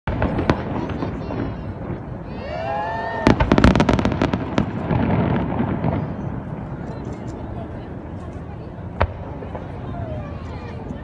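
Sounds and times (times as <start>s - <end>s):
firework cracks: 0.1s - 11.0s
volley of bangs and crackles: 0.1s - 11.0s
rising firework whistle: 2.2s - 4.4s.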